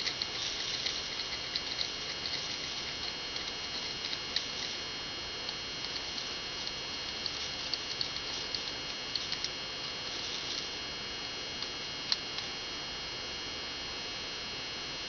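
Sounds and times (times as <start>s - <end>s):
small parts and tools clicking: 0.0s - 4.8s, 5.4s - 10.7s
steady hiss: 0.0s - 10.9s
thin high whine: 0.0s - 12.8s.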